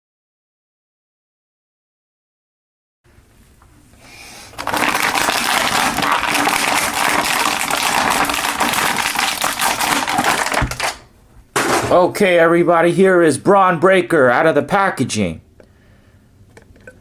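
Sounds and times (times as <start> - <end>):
plastic packaging crackling: 4.5 - 11.1.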